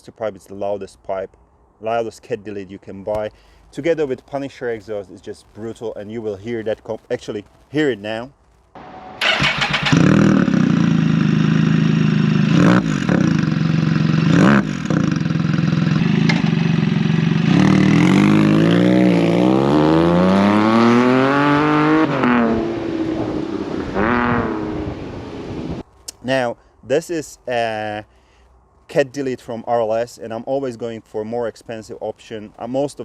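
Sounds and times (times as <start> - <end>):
three-cylinder engine revving: 8.8 - 25.8.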